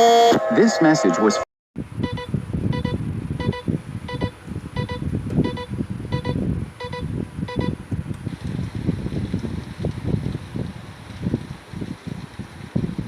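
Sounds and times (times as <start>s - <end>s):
short double electronic beeps: 2.0s - 7.8s.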